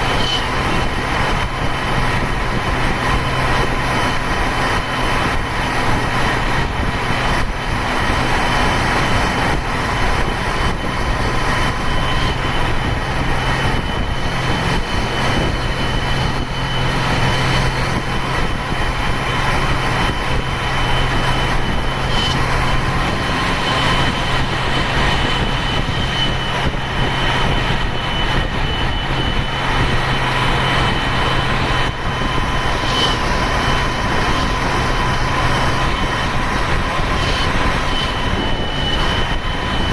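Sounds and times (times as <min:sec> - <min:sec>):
turbo whistle: 0:00.0 - 0:00.6
diesel bus engine drone: 0:00.0 - 0:39.9.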